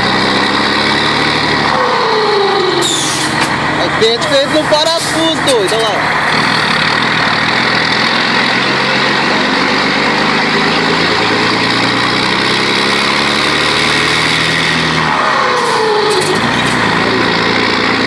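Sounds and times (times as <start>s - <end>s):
truck engine brake rasp: 0.0s - 7.1s, 10.7s - 18.0s.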